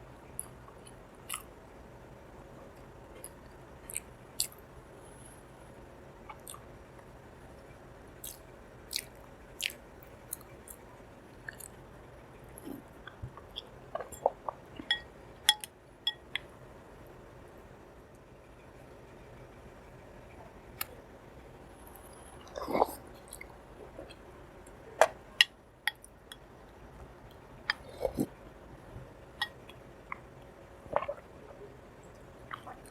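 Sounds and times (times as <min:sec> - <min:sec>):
chewing with wet mouth clicks: 0:00.4 - 0:01.5, 0:03.2 - 0:04.6, 0:06.3 - 0:06.7, 0:08.2 - 0:10.8, 0:11.4 - 0:11.8, 0:12.6 - 0:16.5, 0:29.4 - 0:31.2, 0:32.0 - 0:32.9.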